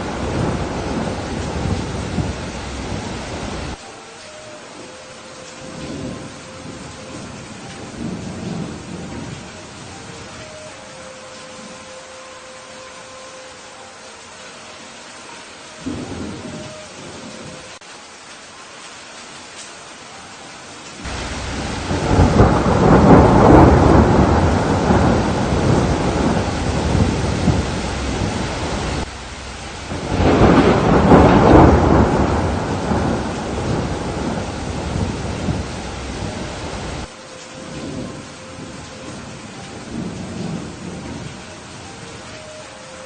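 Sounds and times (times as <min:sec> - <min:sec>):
thunder rolling: 0:00.0 - 0:03.8, 0:15.8 - 0:17.6, 0:21.0 - 0:41.7
steady rain: 0:00.0 - 0:43.0.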